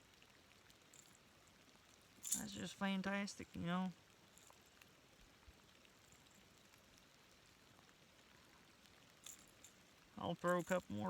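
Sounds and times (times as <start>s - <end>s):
faint rain falling: 0.0s - 11.0s
small ticks: 3.9s - 11.0s.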